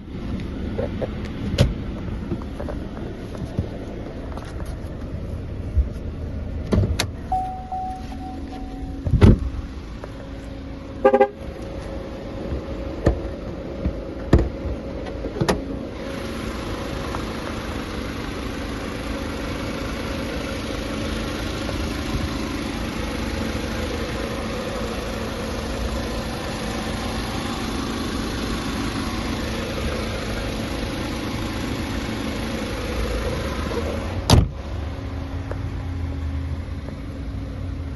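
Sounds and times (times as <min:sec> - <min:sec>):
car running noise: 0:00.0 - 0:37.9
car clicks and thumps: 0:00.3 - 0:10.2, 0:11.0 - 0:15.9, 0:33.1 - 0:34.6
short electronic tone: 0:07.3 - 0:09.1.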